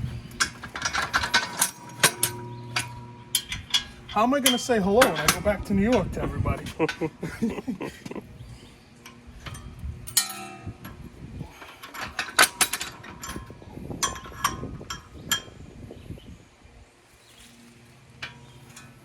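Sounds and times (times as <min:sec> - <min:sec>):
metal parts clanking: 0:00.1 - 0:07.6, 0:09.0 - 0:15.6, 0:18.2 - 0:19.0
sharp metal knocks: 0:00.4 - 0:06.1.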